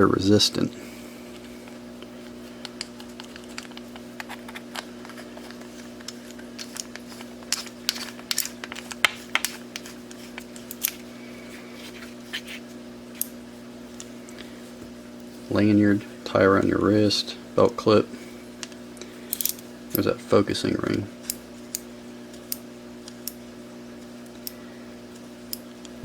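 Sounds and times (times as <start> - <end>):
steady low hum: 0.0 - 26.0
flashlight handling clicks and rustles: 2.6 - 11.0.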